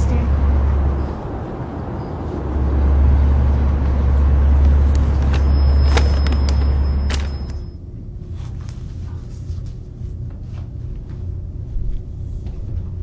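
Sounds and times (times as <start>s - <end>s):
low engine rumble: 0.0s - 13.0s.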